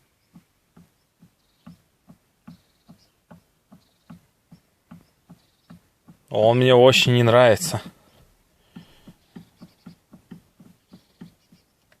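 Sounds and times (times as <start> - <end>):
faint knocking from car steering: 0.2 - 6.3, 8.7 - 12.0.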